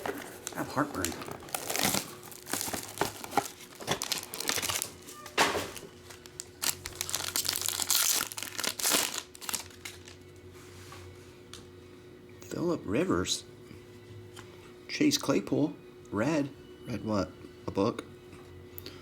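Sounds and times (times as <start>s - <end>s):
plastic wrapping crinkling and tearing: 0.0s - 10.3s.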